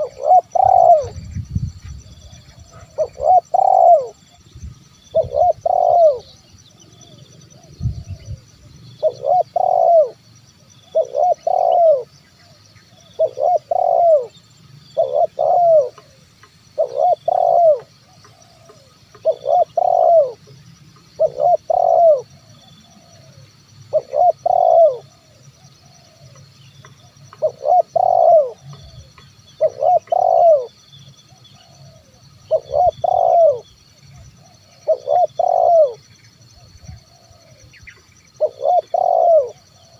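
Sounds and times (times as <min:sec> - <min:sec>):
dove cooing: 0:00.0 - 0:01.3, 0:02.0 - 0:04.3, 0:05.1 - 0:39.9.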